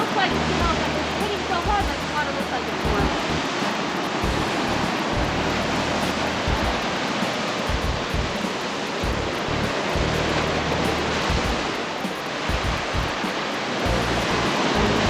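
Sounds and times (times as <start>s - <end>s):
sea surf rushing in rocks: 0.0s - 15.0s.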